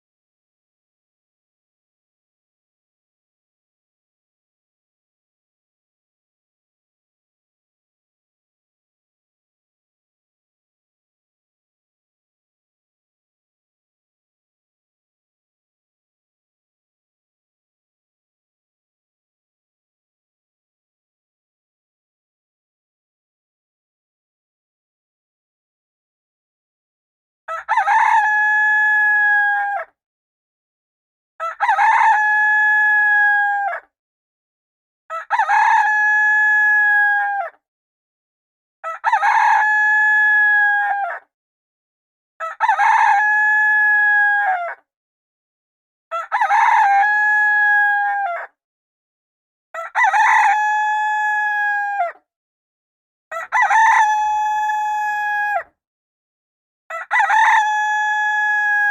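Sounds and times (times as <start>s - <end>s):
rooster crowing: 27.5s - 29.9s, 31.4s - 33.9s, 35.1s - 37.6s, 38.8s - 41.2s, 42.4s - 44.8s, 46.1s - 48.6s, 49.8s - 52.2s, 53.3s - 55.7s, 56.9s - 58.9s.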